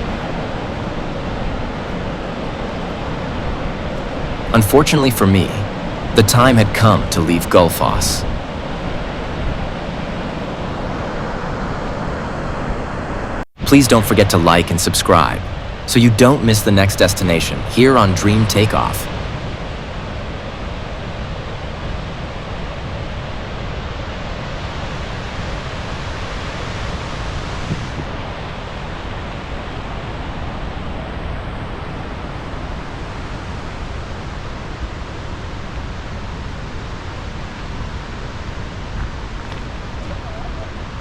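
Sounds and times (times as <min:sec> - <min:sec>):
waterfall rushing: 0:00.0 - 0:08.5, 0:13.6 - 0:19.3.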